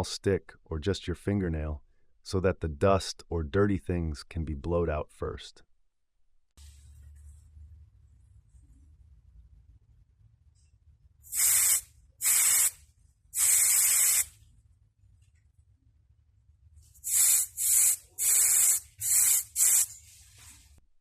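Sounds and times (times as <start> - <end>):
air hissing from tire valve: 11.3 - 12.8, 13.4 - 14.3, 17.0 - 20.0.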